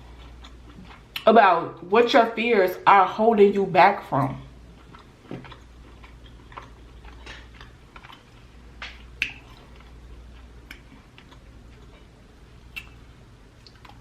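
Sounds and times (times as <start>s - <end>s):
mouth clicks and smacks chewing: 4.7s - 12.1s, 12.7s - 14.0s.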